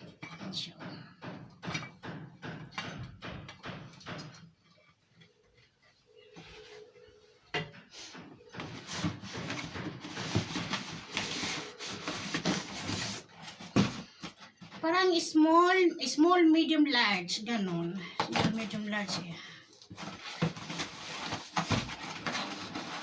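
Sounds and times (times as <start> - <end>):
continuous rustling: 0.0 - 23.0.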